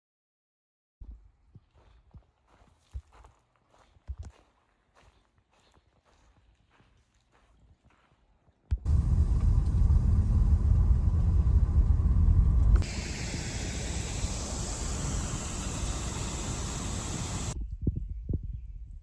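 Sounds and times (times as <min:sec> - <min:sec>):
loud low rumble: 0:08.8 - 0:17.6
steady hiss: 0:12.8 - 0:17.6.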